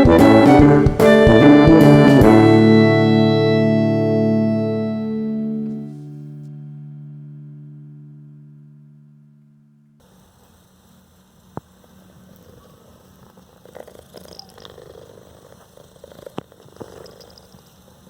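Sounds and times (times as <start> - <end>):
background music: 0.0 - 9.1
cat purring: 11.6 - 18.0.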